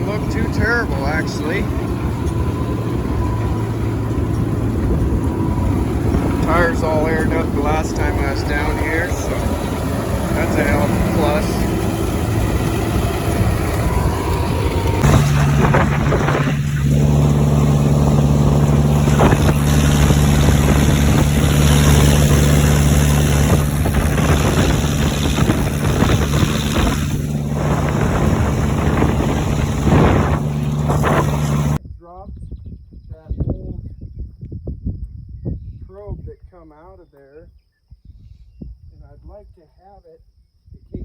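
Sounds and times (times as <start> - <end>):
engine humming steadily: 0.0 - 31.8.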